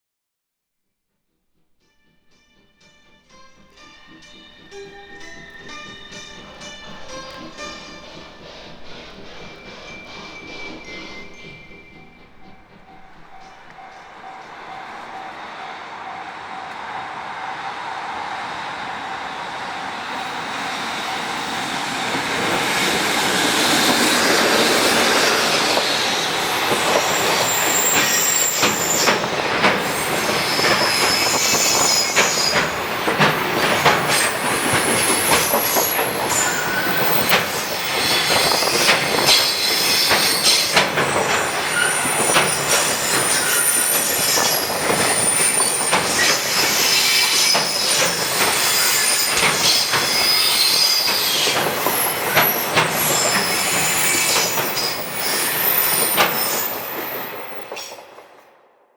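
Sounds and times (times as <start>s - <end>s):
freight train passing: 1.6s - 58.9s
high thin wheel squeals: 4.0s - 16.8s, 20.0s - 58.1s
wheels clicking over rail joints: 21.2s - 58.4s.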